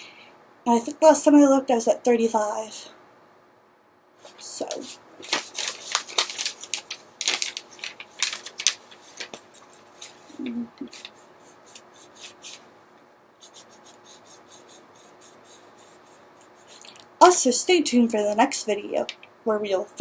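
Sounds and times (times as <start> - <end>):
scratchy strokes on paper: 9.5 - 12.7, 13.4 - 17.0.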